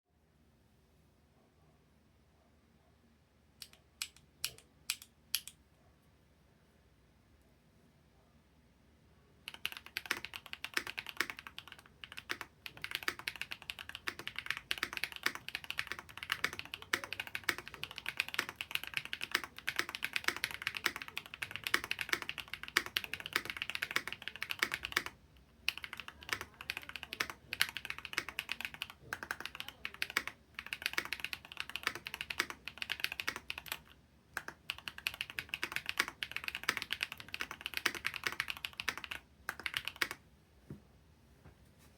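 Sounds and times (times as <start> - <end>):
mechanical keyboard typing: 9.5 - 40.2.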